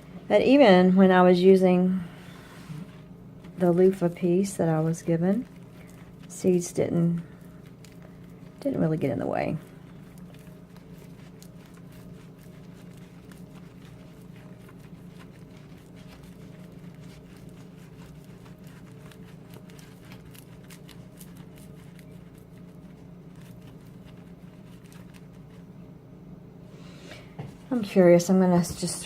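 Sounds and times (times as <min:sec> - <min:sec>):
steady low hum: 0:00.0 - 0:29.0
dry fibres clicking and crackling: 0:03.4 - 0:25.6.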